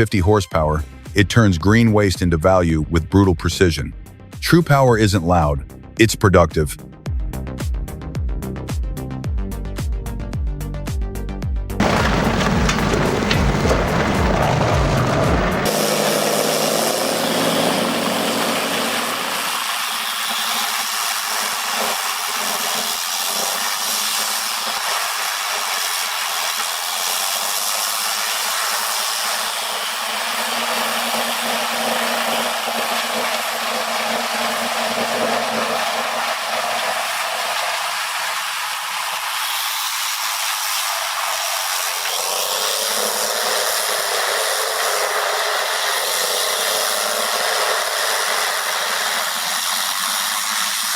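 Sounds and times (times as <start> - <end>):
heavy machinery grinding: 11.8 - 50.9.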